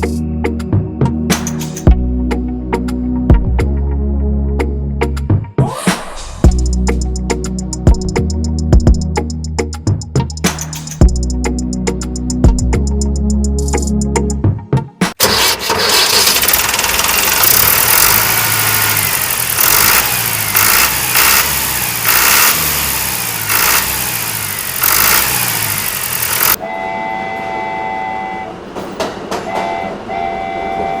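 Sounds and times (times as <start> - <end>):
engine throbbing: 15.2 - 26.7
horn-like tones: 24.8 - 31.0.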